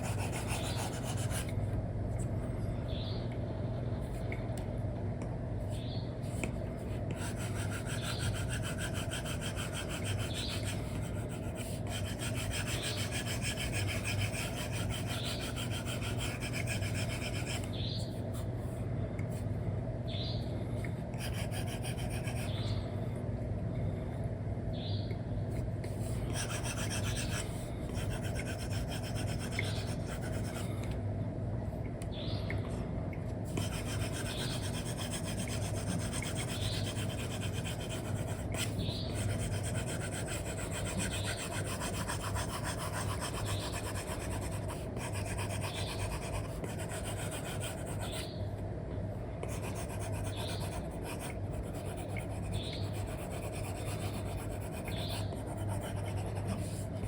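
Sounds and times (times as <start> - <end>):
stylus scratching on screen film: 0.0 - 1.5, 7.2 - 17.8, 26.1 - 30.7, 33.5 - 48.3, 49.5 - 57.0
low steady hum: 0.0 - 57.0.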